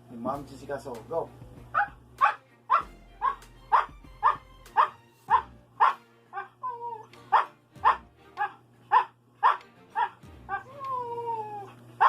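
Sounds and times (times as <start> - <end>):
dog barking: 1.8 - 11.4
dog whine-bark: 1.8 - 11.8.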